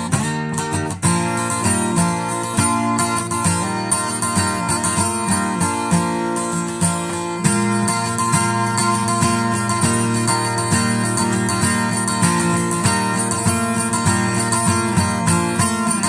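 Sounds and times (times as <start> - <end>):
guitar notes and chords: 0.0 - 16.0.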